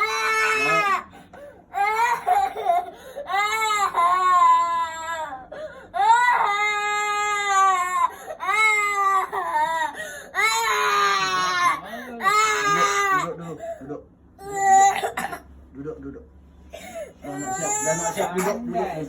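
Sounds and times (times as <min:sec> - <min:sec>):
infant crying: 0:00.0 - 0:13.6, 0:14.4 - 0:15.2, 0:16.8 - 0:19.0.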